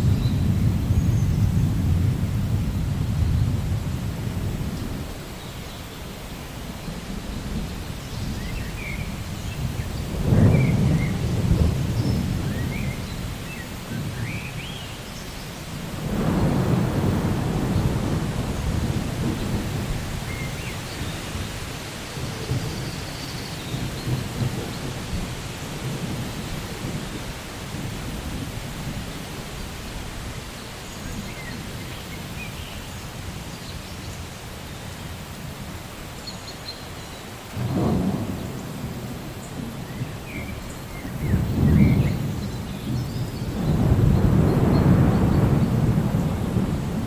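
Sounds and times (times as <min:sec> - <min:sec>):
thunder rumbling: 0:00.0 - 0:05.4, 0:06.8 - 0:14.6, 0:15.6 - 0:29.8, 0:37.5 - 0:47.0
steady rain: 0:00.0 - 0:47.0.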